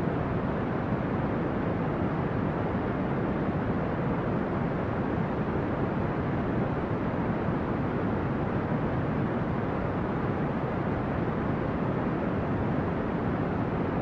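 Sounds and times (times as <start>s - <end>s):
brown noise rumbling hiss: 0.0s - 14.0s.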